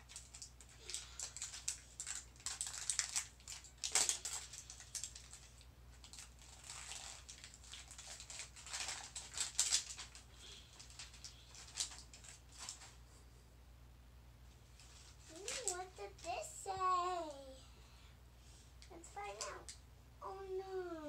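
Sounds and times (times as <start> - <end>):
plastic packaging crinkling: 0.0 - 13.0, 14.8 - 16.4.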